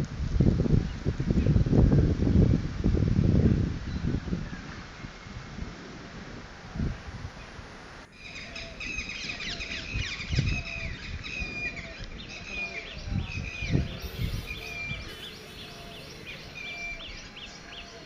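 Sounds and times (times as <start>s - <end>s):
lapwing calling: 6.9s - 18.0s.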